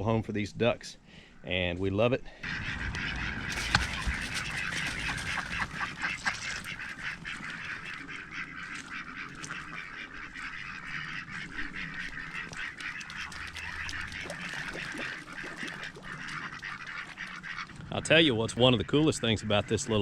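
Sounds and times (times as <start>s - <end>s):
ducks quacking: 2.3s - 20.0s.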